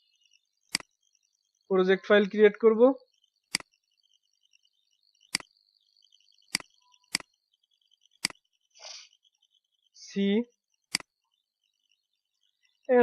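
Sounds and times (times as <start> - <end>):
computer mouse clicking: 0.0 - 1.6, 3.1 - 10.0, 10.6 - 12.9.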